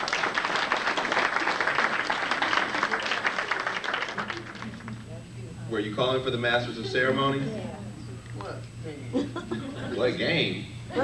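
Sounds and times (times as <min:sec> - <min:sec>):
crowd applauding: 0:00.0 - 0:05.1.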